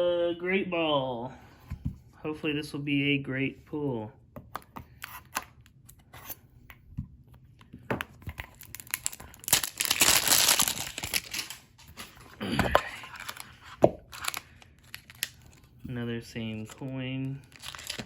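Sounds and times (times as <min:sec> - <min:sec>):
plastic wrapping tearing and crinkling: 0:08.4 - 0:15.8, 0:16.6 - 0:18.0.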